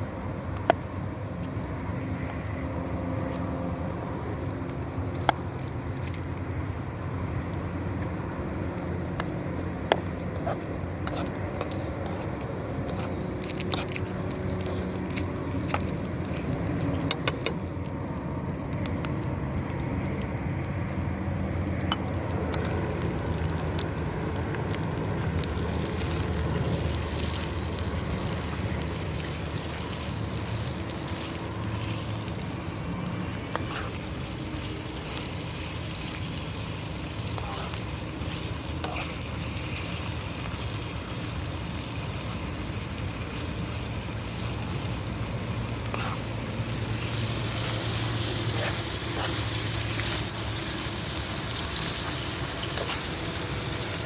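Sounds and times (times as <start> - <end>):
food sizzling in a pan: 22.3 - 54.0.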